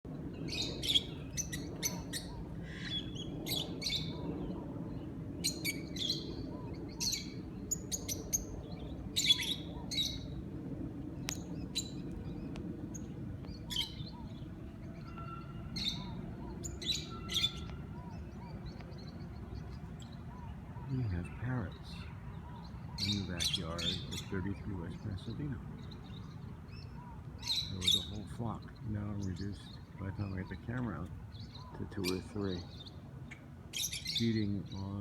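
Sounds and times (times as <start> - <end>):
low background hum: 0.1 - 35.0
parrots chirping: 0.3 - 4.4, 5.4 - 10.4, 11.2 - 34.7.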